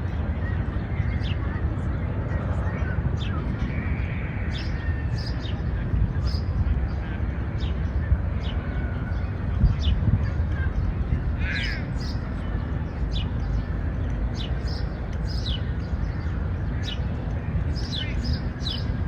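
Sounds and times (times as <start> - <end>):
low rumble of city noise: 0.0 - 19.0
birds calling: 11.4 - 12.2.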